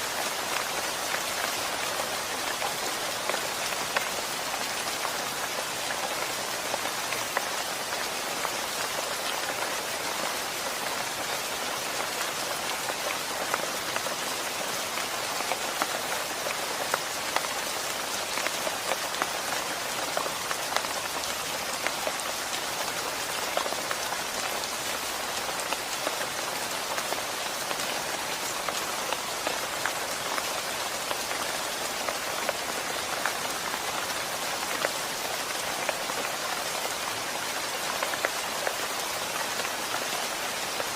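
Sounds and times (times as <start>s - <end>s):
steady rain falling: 0.0s - 40.9s.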